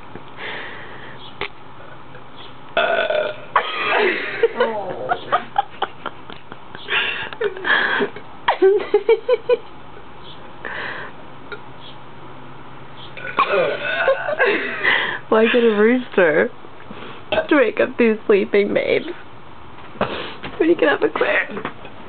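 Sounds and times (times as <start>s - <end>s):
person burping loudly: 2.8s - 4.0s, 13.2s - 14.4s.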